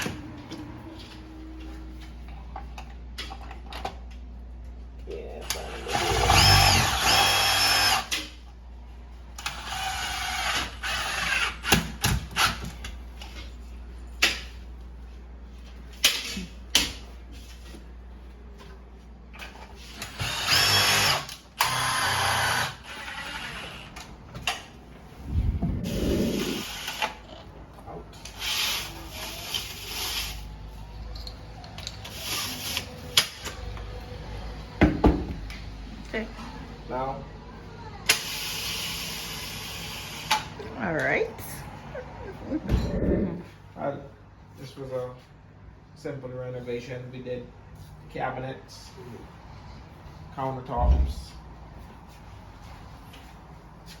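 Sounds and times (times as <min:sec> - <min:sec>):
power drill whining: 0:05.6 - 0:08.2, 0:09.4 - 0:11.8, 0:20.0 - 0:23.9, 0:25.9 - 0:27.2, 0:28.2 - 0:30.4.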